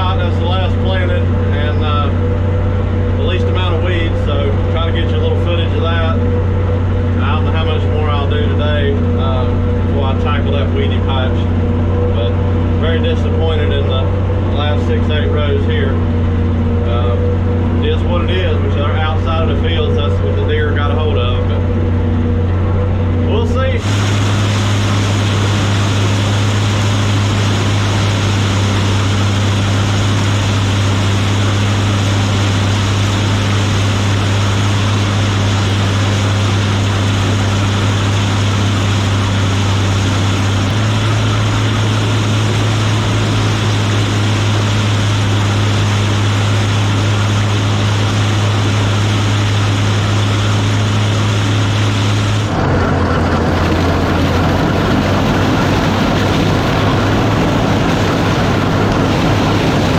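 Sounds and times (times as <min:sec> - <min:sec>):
combine engine drone: 0:00.0 - 0:59.9
threshing noise: 0:23.6 - 0:59.9.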